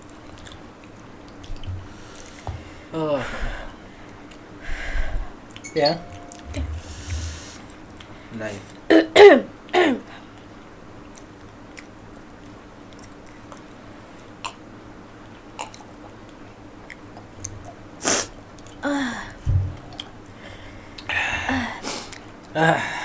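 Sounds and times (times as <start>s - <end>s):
people chewing food: 0.0s - 5.6s, 10.4s - 18.8s.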